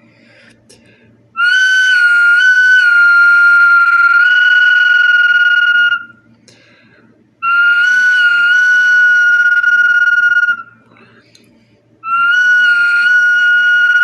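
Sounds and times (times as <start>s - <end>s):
whistling bottle high whistles: 1.4s - 6.2s, 7.4s - 10.8s, 12.0s - 14.0s.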